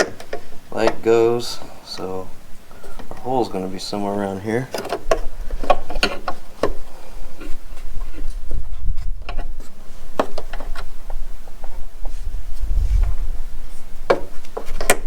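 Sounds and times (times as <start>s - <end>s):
steady low rumble: 10.9s - 14.1s.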